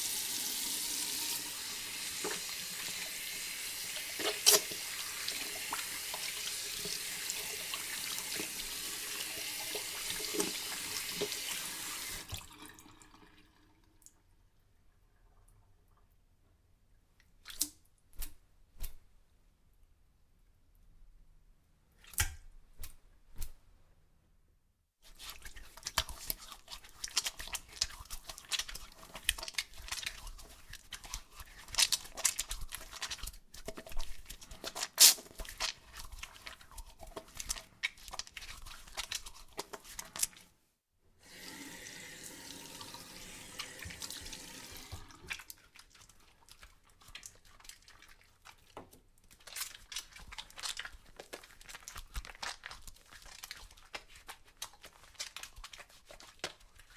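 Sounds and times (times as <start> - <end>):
running tap water: 0.0 - 13.6, 41.2 - 45.6
soapy hands rubbing: 0.9 - 12.2, 25.1 - 40.6, 41.3 - 56.9.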